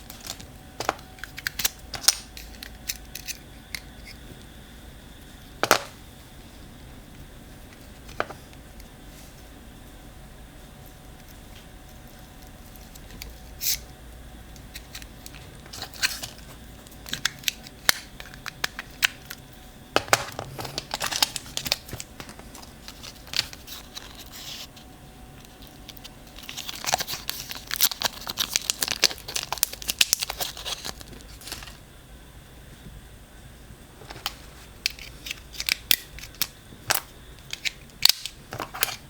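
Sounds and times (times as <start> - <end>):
packaging crinkling and tearing: 20.5 - 24.7, 25.4 - 31.8.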